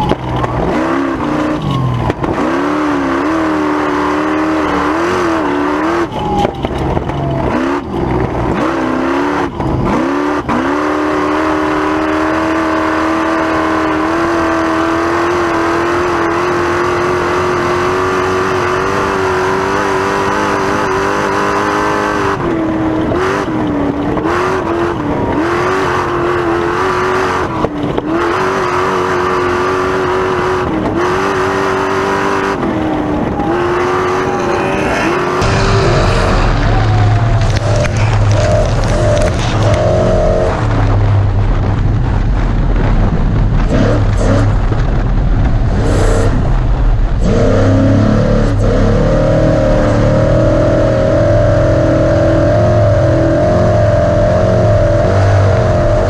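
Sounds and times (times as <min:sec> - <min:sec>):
constant rushing noise: 0:00.0 - 0:56.0
engine revving hard: 0:08.5 - 0:22.4, 0:28.1 - 0:41.0, 0:47.2 - 0:56.0.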